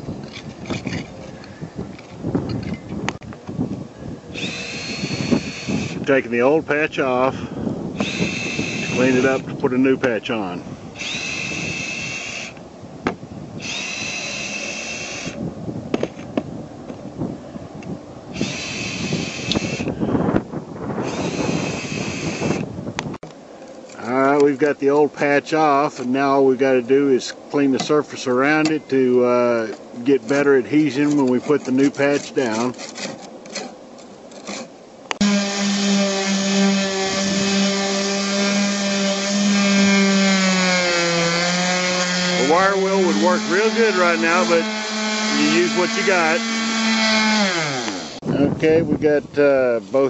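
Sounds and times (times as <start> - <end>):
scraping: 0.0 - 3.0, 29.6 - 48.2
power drill spinning: 4.3 - 6.0, 8.0 - 9.5, 11.0 - 12.6, 13.6 - 15.4, 18.3 - 19.9, 21.0 - 22.6, 35.2 - 48.2.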